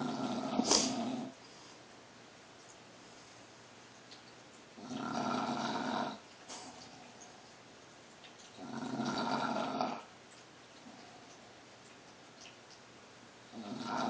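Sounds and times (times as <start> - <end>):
dog snoring: 0.0 - 1.4, 4.8 - 7.0, 8.6 - 10.1, 13.5 - 14.0.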